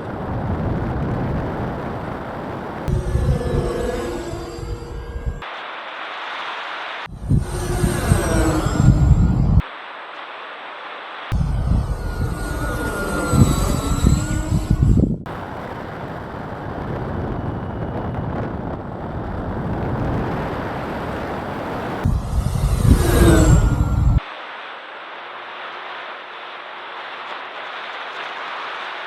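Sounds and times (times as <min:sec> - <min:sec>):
heavy low rumble: 0:00.0 - 0:05.4, 0:07.1 - 0:09.6, 0:11.3 - 0:24.2.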